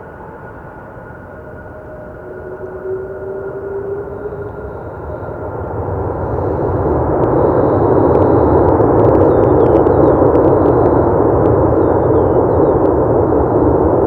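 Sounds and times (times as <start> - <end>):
jet engines roaring: 0.0 - 14.0.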